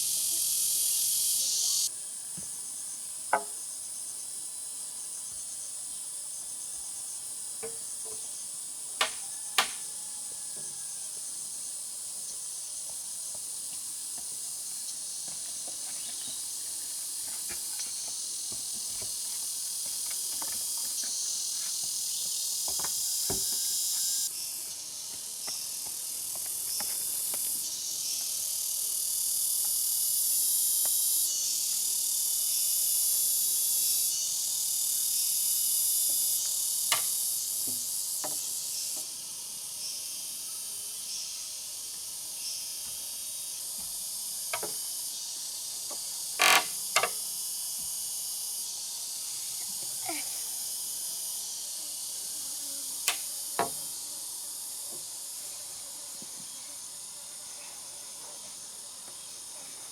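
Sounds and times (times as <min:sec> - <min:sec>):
insects buzzing: 0:00.0 - 0:59.9
sharp knocks: 0:03.3 - 0:03.6, 0:09.0 - 0:09.8.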